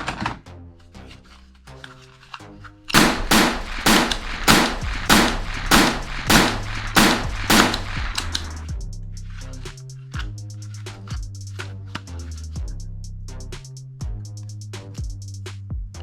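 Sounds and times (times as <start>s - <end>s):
sharp gunshot-like bangs: 3.0s - 8.6s.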